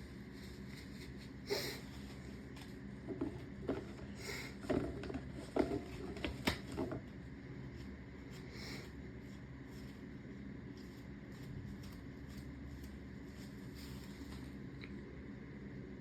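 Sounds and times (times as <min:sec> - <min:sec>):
person sniffling: 0:01.4 - 0:01.9
rustling: 0:09.2 - 0:14.7.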